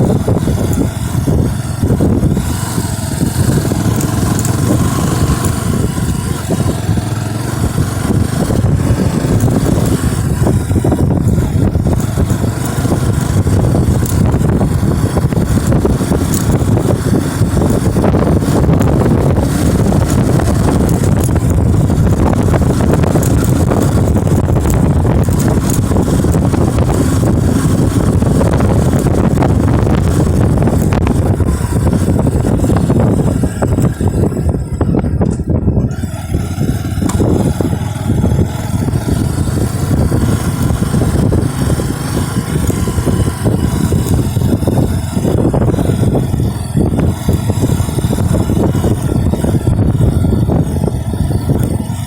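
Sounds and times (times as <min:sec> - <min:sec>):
motorcycle engine running: 0:00.0 - 0:52.0
wind buffeting microphone: 0:00.0 - 0:52.0.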